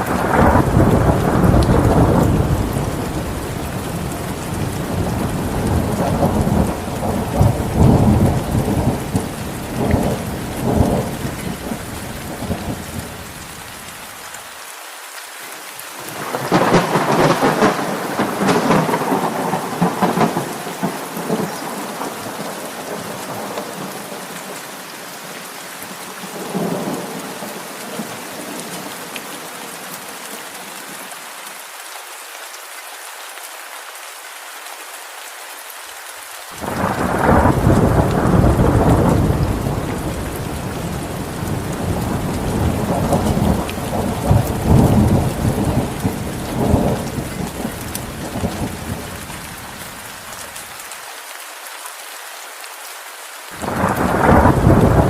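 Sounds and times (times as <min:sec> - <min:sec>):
steady rain: 0:00.0 - 0:55.0
rolling thunder: 0:00.1 - 0:13.1, 0:16.2 - 0:23.9, 0:36.6 - 0:49.1, 0:53.6 - 0:55.0.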